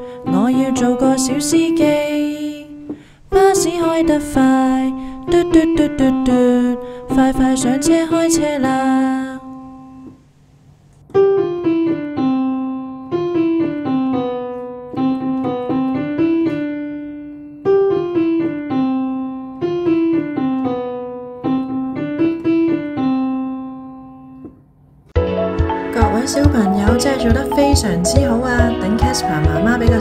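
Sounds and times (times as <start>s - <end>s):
piano melody: 11.2s - 24.4s, 25.2s - 30.0s.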